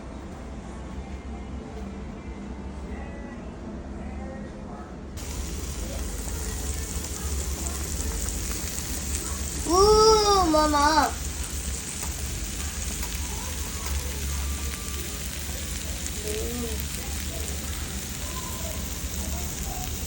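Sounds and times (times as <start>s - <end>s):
meat sizzling on a grill: 5.2s - 20.0s.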